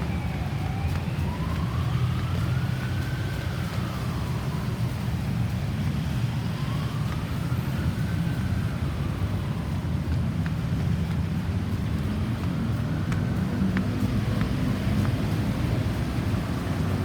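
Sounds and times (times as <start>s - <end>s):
ambulance siren wailing: 0.0s - 11.0s
road traffic rumble: 0.0s - 17.0s.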